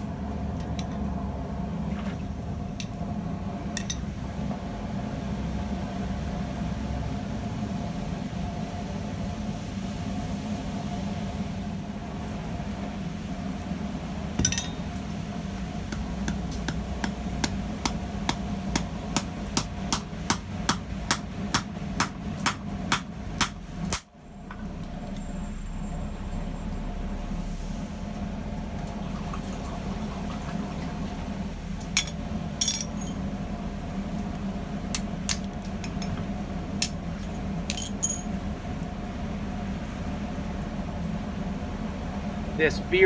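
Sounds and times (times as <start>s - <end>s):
steady hum: 11.6s - 28.8s
hammer striking rivet rod: 15.9s - 24.2s.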